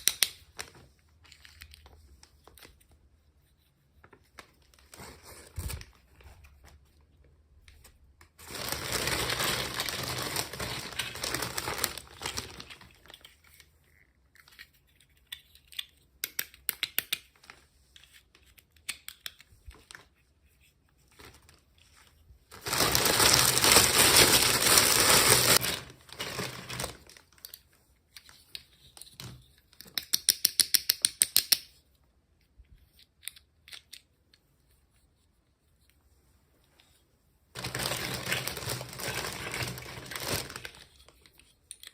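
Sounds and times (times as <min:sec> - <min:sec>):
packaging crinkling and tearing: 0:08.4 - 0:13.3, 0:22.5 - 0:27.5, 0:37.6 - 0:41.1.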